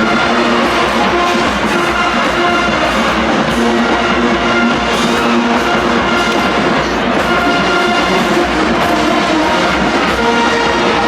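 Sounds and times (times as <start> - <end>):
music with horn-like notes: 0.0 - 11.0.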